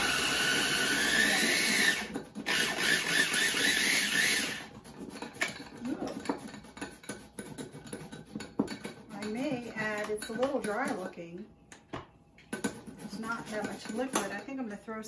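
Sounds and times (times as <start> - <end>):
electric chopper motor whining: 0.0 - 4.6.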